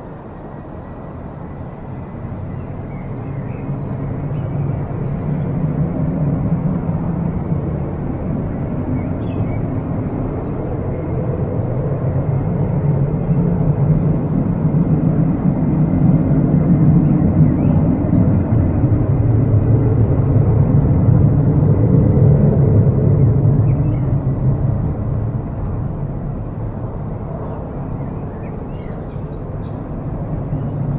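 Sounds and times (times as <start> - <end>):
jet airliner rumble: 0.0 - 30.9.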